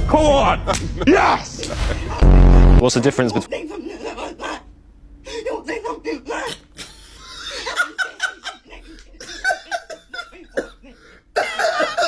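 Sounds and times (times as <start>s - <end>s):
person coughing: 9.3s - 12.0s.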